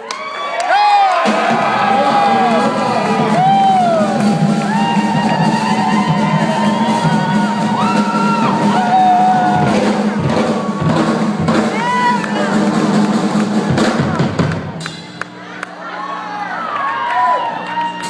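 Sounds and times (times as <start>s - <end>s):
crowd whooping: 0.0s - 14.5s, 15.1s - 18.0s
rock band playing live: 1.3s - 15.2s.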